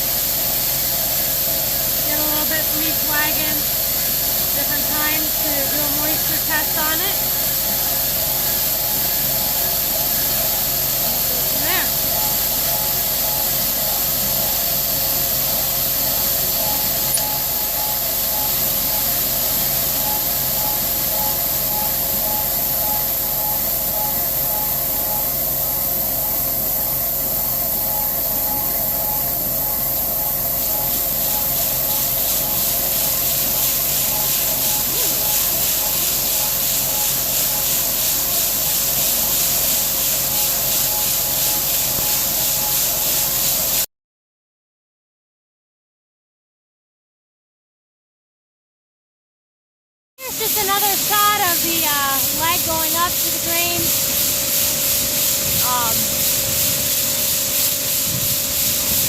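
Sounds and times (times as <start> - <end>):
grain hissing: 0.0 - 24.6, 30.6 - 43.9, 50.2 - 59.0
machinery whine: 0.0 - 43.8, 50.2 - 59.0.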